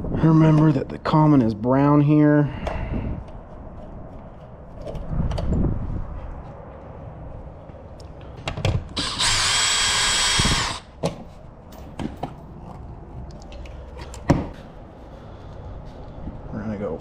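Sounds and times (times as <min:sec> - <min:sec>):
power drill running: 0:09.0 - 0:10.9.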